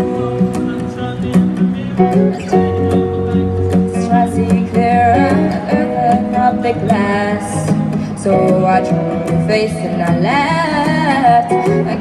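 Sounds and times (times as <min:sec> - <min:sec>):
bass line: 0:00.0 - 0:05.6
strummed guitar: 0:00.0 - 0:12.0.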